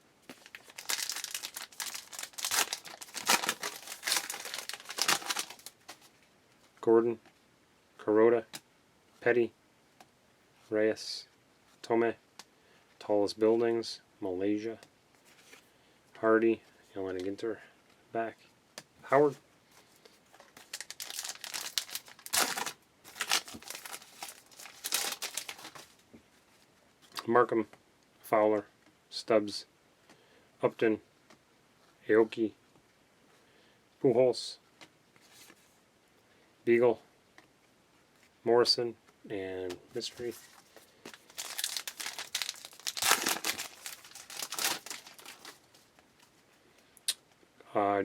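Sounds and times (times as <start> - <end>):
wrapper tearing and crinkling: 0.3 - 6.0, 20.4 - 26.0, 40.1 - 45.8.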